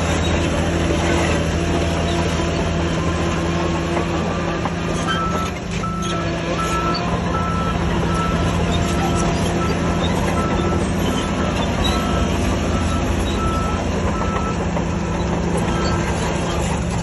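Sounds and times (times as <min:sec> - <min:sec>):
diesel engine running: 0:00.0 - 0:17.0
reversing alarm beeping: 0:04.2 - 0:16.3.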